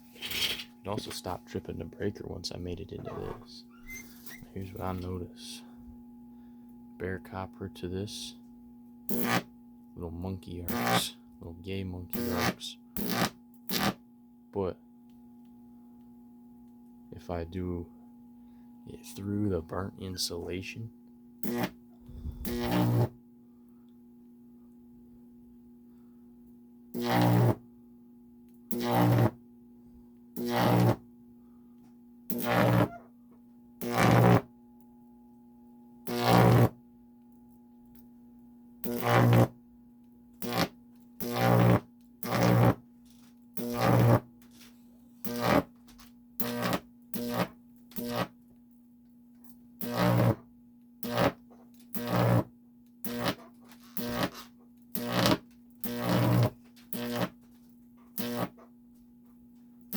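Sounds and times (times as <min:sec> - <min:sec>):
buzzing high-voltage arcs: 0:09.1 - 0:09.5, 0:10.6 - 0:11.2, 0:12.1 - 0:14.0, 0:21.4 - 0:23.2, 0:26.9 - 0:27.6, 0:28.7 - 0:29.4, 0:30.4 - 0:31.0, 0:32.3 - 0:33.0, 0:33.8 - 0:34.5, 0:36.1 - 0:36.8, 0:38.8 - 0:39.6, 0:40.4 - 0:42.8, 0:43.6 - 0:44.3, 0:45.2 - 0:45.8, 0:46.4 - 0:48.4, 0:49.8 - 0:50.4, 0:51.0 - 0:57.4, 0:58.1 - 0:58.6.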